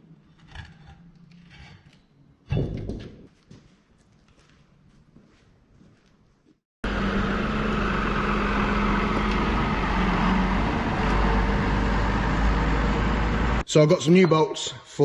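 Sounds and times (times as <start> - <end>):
engine running steadily: 6.8 - 13.6.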